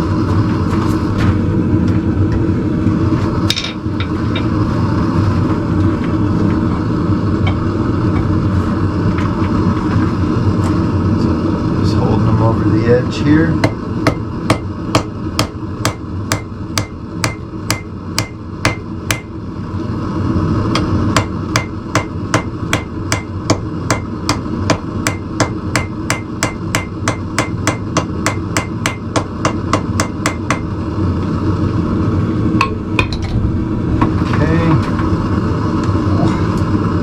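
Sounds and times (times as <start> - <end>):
hammer blows on hot steel: 13.6 - 19.4.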